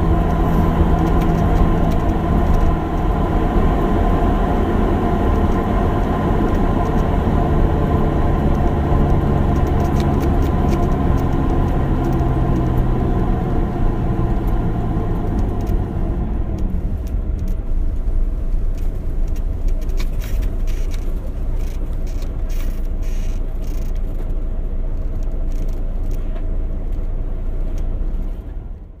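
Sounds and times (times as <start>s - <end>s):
bus engine humming: 0.0s - 29.0s
road rumble: 0.0s - 29.0s
seats squeaking: 19.7s - 24.2s.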